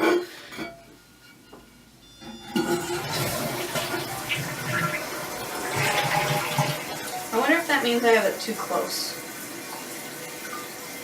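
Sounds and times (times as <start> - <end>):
toilet flushing: 2.4 - 11.0.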